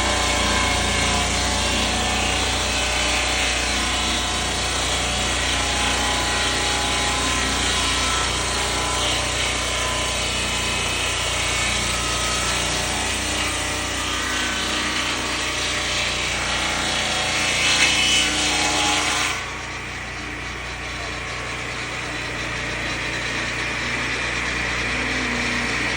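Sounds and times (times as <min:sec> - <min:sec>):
chainsaw engine running: 0:00.0 - 0:08.5, 0:19.4 - 0:25.9
saw blade cutting wood: 0:00.0 - 0:25.9.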